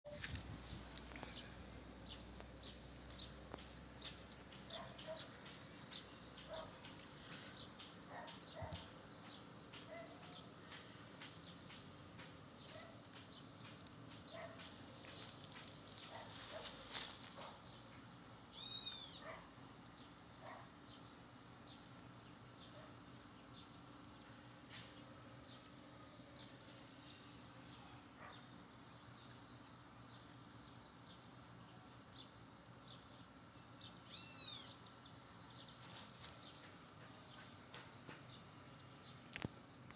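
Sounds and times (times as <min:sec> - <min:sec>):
small birds chirping: 0:00.1 - 0:39.9.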